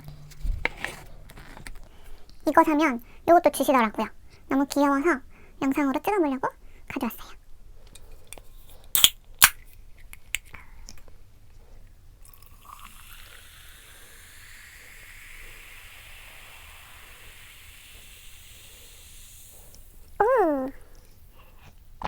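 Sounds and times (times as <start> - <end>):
liquid being poured: 12.2 - 20.0.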